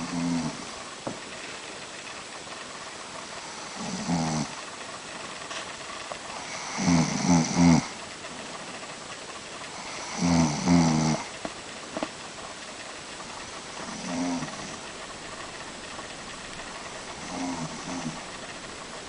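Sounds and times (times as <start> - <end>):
woman snoring: 0.0 - 0.6, 3.6 - 4.6, 6.4 - 7.9, 9.8 - 11.3, 13.8 - 14.8, 17.2 - 18.2.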